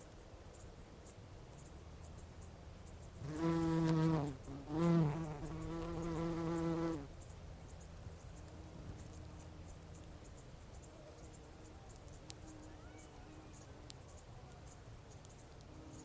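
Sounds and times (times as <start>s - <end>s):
bumblebee buzzing: 3.2s - 7.1s.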